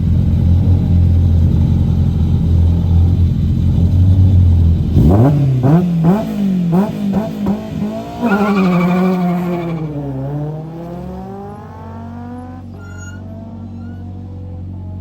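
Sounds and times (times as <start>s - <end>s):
rally car engine revving: 0.0s - 15.0s.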